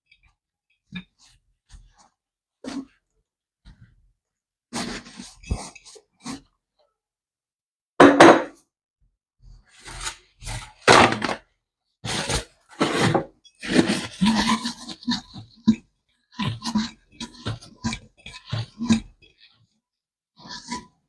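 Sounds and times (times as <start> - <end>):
kitchen items knocking: 8.0 - 8.6, 10.9 - 11.4.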